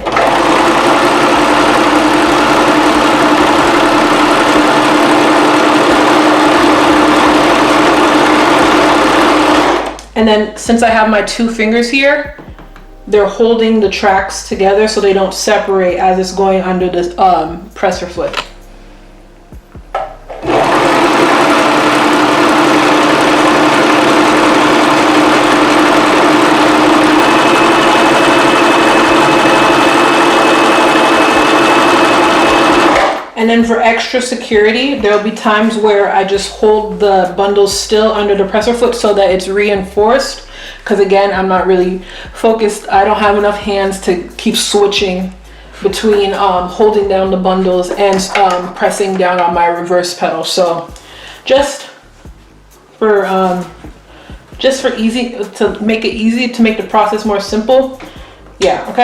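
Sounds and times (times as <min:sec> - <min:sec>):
electric sewing machine running: 0:00.0 - 0:10.0, 0:20.3 - 0:33.3.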